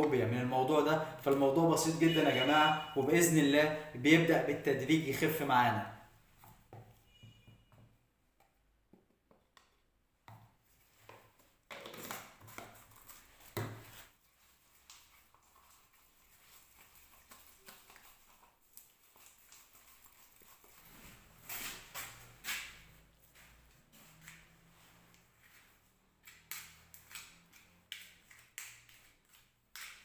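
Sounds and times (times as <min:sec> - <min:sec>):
spatula mixing paste in bowl: 0:12.3 - 0:21.4.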